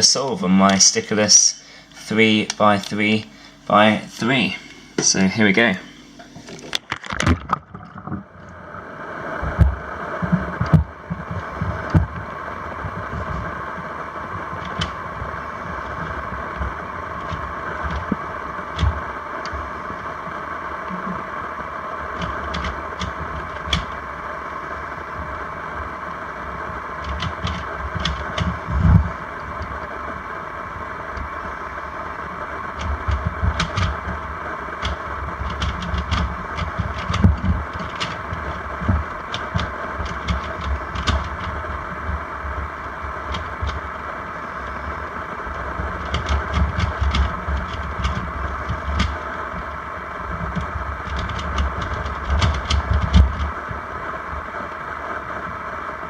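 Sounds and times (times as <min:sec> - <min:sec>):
steady hum: 0:00.0 - 0:56.0
puzzle cube clicking underwater: 0:06.6 - 0:08.2.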